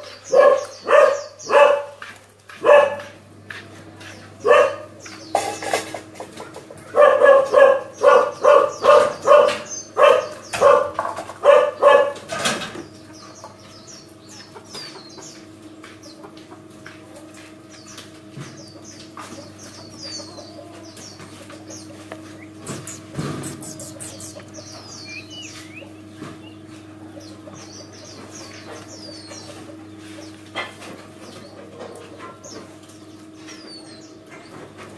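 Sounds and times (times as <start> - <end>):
small birds chirping: 0.0 - 2.1, 3.5 - 10.8, 12.8 - 17.0, 17.6 - 34.6
dog barking: 0.3 - 2.0, 2.6 - 3.2, 4.4 - 4.9, 6.9 - 12.2.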